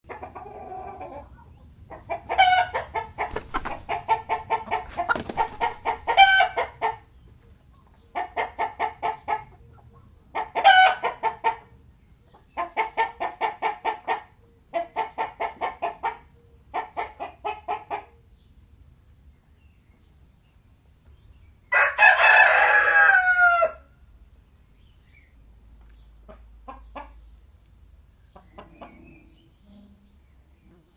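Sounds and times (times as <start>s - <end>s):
chicken clucking: 0.1s - 18.2s, 25.8s - 27.4s, 28.2s - 29.9s
rooster crowing: 21.7s - 23.9s.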